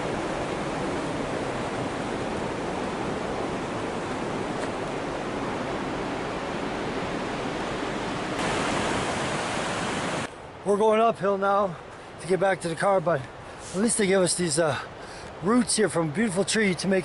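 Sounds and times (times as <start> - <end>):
waterfall rushing: 0.0 - 10.3.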